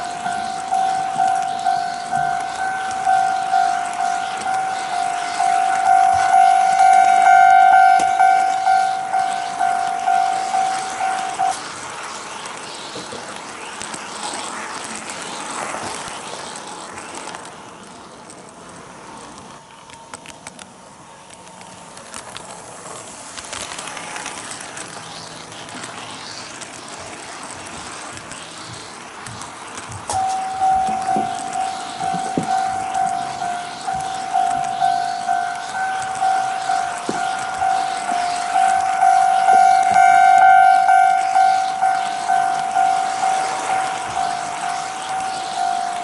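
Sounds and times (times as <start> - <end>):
toy level crossing signal dinging: 0.0 - 11.6, 30.1 - 46.0
model train rattling on track: 0.0 - 46.0.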